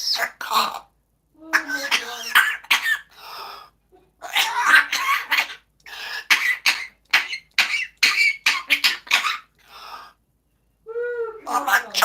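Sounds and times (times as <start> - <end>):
parrot imitating coughing: 0.0 - 0.9, 1.5 - 3.2, 4.2 - 9.6, 11.5 - 12.0.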